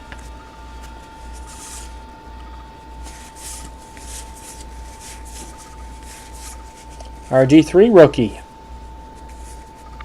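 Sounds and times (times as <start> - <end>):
low electrical hum: 0.0 - 10.0
trading cards swishing: 0.1 - 2.1, 2.8 - 7.4, 9.1 - 10.0.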